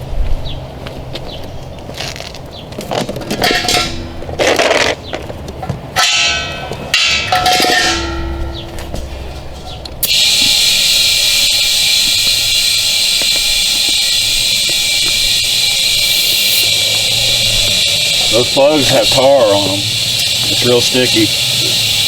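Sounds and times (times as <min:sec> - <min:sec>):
metallic clinks: 0:06.0 - 0:22.0
compressed air hissing into tire: 0:09.0 - 0:22.0
short air hiss bursts: 0:10.0 - 0:22.0.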